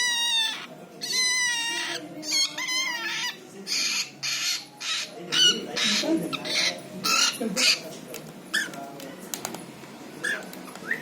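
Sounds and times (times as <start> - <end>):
cockatiel chattering calls: 0.0 - 7.8
cockatiel whistling: 10.3 - 11.0.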